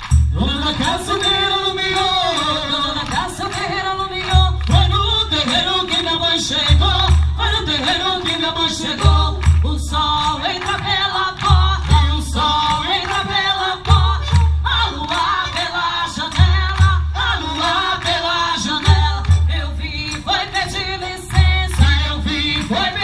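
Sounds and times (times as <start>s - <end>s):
low drum beat: 0.0s - 1.0s, 4.2s - 6.0s, 6.6s - 12.8s, 13.9s - 15.1s, 16.3s - 17.6s, 18.8s - 20.2s, 21.3s - 22.8s
voices singing together: 0.0s - 23.0s.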